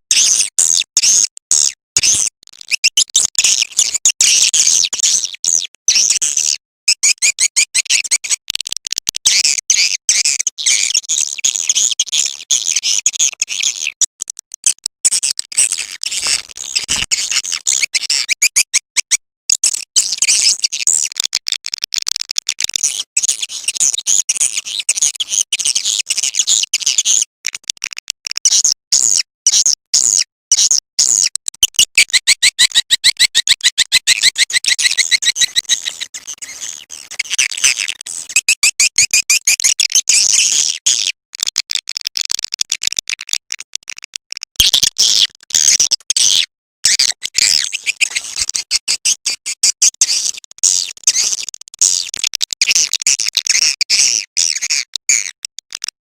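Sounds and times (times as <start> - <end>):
high-pitched twittering bird chirps: 16.7 - 19.2, 31.2 - 40.5.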